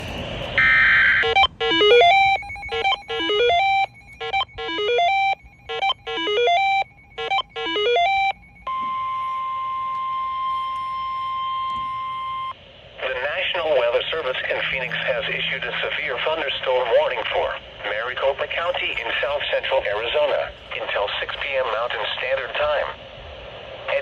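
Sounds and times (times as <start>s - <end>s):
steady alert tone: 0.0s - 10.5s, 14.0s - 17.5s
electronic chime melody: 0.0s - 12.5s.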